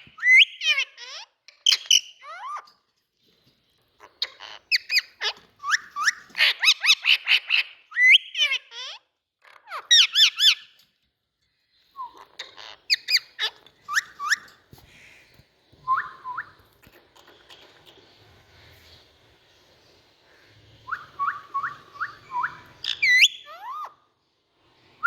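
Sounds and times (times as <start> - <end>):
parakeet chirps and squawks: 0.0 - 2.8, 4.0 - 10.8, 12.0 - 14.6, 20.4 - 24.2.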